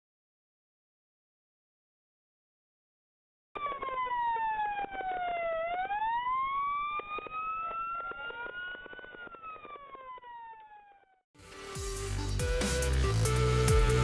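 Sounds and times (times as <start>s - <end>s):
siren wailing: 3.6s - 11.2s.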